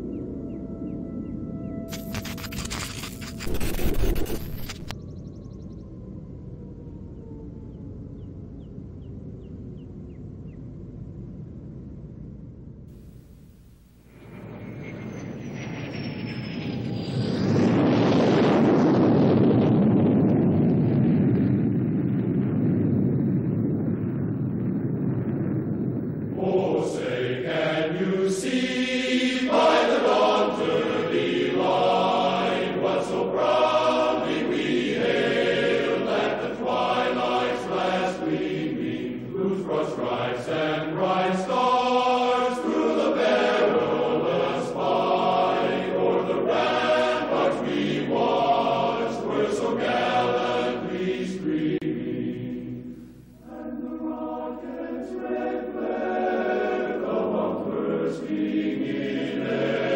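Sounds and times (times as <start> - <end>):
choir singing slowly: 26.3 - 59.9.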